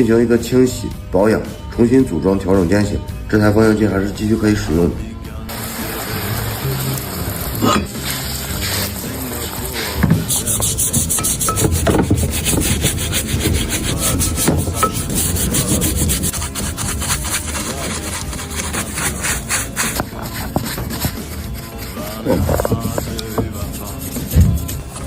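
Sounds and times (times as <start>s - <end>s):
scrubbing metal parts: 5.5s - 25.0s.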